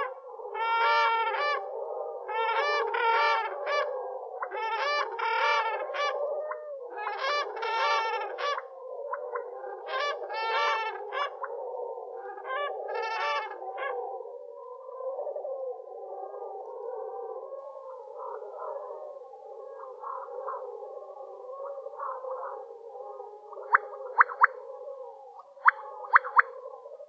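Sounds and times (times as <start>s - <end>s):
distorted crane calls with echo: 0.0s - 27.0s.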